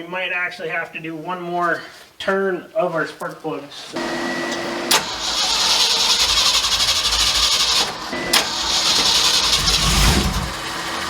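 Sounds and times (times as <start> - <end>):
starter motor cranking engine: 4.0 - 11.0.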